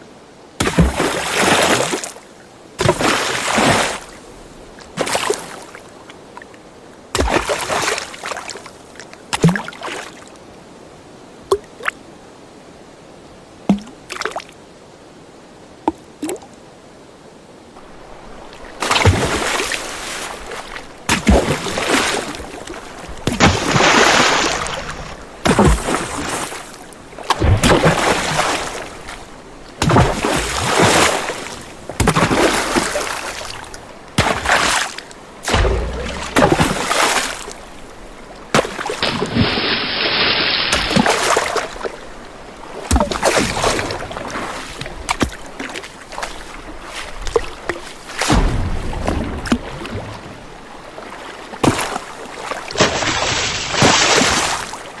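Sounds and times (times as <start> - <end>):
water sloshing and splashing: 0.6 - 2.2, 2.8 - 10.4, 13.6 - 14.6, 17.8 - 55.0
water drips: 13.7 - 14.6, 15.8 - 16.6, 17.8 - 55.0.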